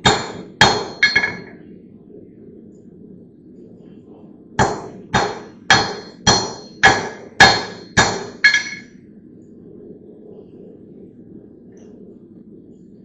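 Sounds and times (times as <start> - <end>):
hammer striking metal: 0.0 - 1.5, 4.6 - 8.8.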